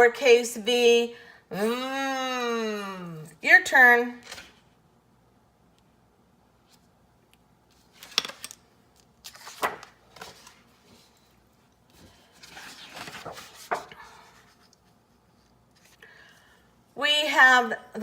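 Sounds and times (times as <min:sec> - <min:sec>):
cards or papers being handled: 0:07.7 - 0:16.0.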